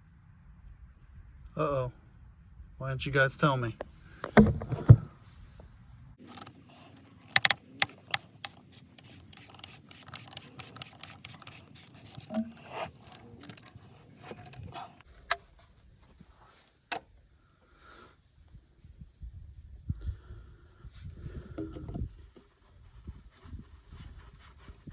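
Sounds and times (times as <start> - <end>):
dull knocks: 4.2 - 5.1.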